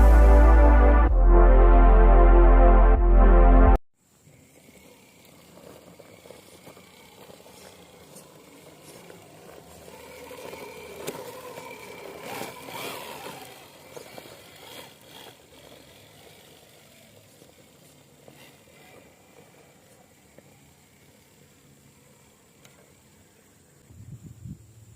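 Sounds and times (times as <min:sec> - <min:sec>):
model truck motor whir: 0:04.2 - 0:23.8.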